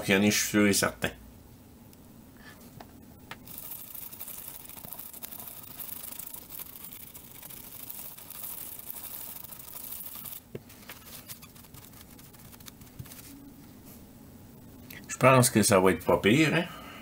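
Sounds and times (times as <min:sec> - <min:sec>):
faint handling ticks: 0:03.4 - 0:10.4
brush scrubbing circuit board: 0:03.4 - 0:13.3.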